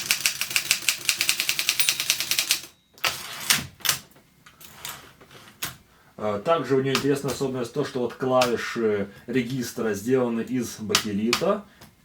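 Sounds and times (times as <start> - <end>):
manual typewriter typing: 0.0 - 4.1.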